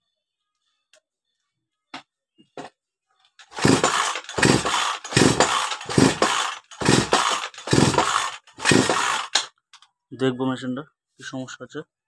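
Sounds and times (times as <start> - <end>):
chainsaw recoil starter pulls: 3.4 - 9.5.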